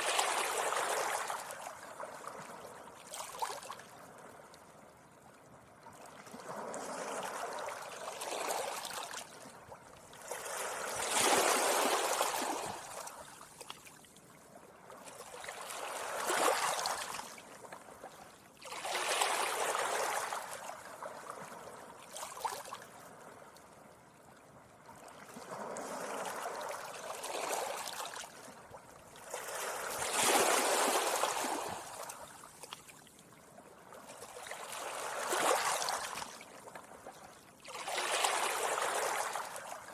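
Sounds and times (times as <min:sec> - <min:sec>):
small waves washing onto beach: 0:00.0 - 0:04.8, 0:05.8 - 0:39.9.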